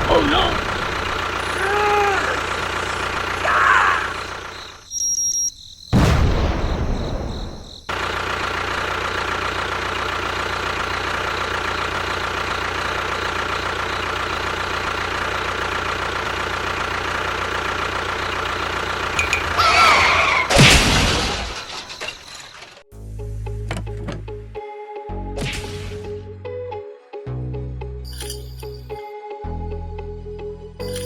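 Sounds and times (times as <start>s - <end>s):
loud deep rumble: 0.0s - 4.9s
engine-like running hum: 0.0s - 5.0s, 7.9s - 25.3s.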